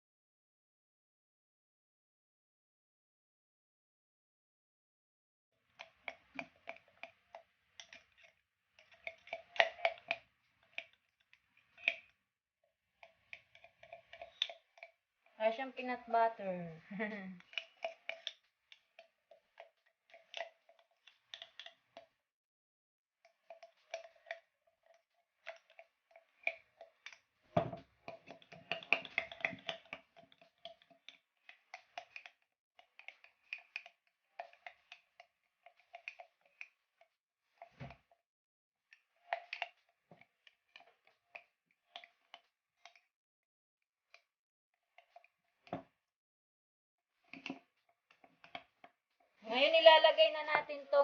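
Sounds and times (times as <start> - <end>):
spoon stirring thick paste: 5.6 - 12.2, 12.8 - 22.2, 23.3 - 38.2.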